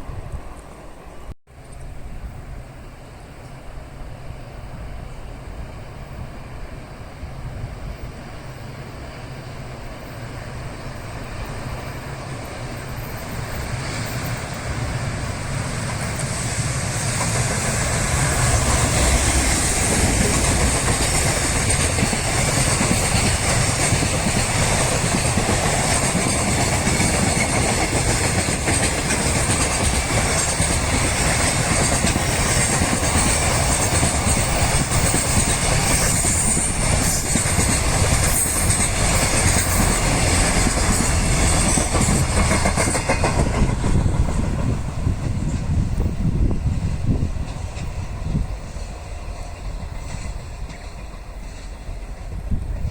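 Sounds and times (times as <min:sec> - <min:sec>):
train wheels rumbling and clattering: 0:03.4 - 0:52.9.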